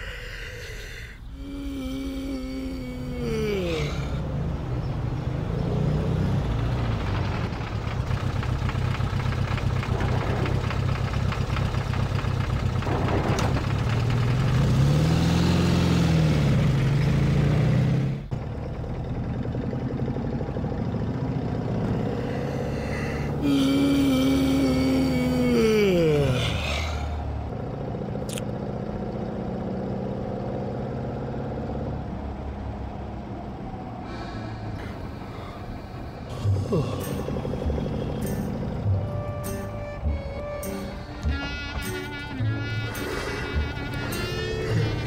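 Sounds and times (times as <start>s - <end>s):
person yawning: 0.0s - 4.2s, 22.1s - 27.2s, 34.0s - 38.2s
car engine droning: 0.0s - 45.0s.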